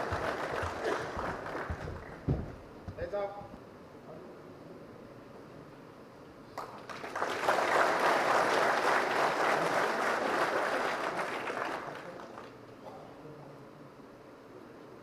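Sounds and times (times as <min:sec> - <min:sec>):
audience applauding: 0:00.0 - 0:02.4, 0:06.6 - 0:12.6.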